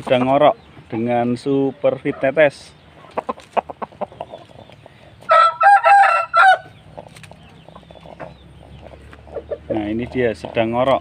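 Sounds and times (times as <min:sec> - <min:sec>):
soft chicken clucks: 0:00.0 - 0:11.0
rooster crowing: 0:05.3 - 0:06.8.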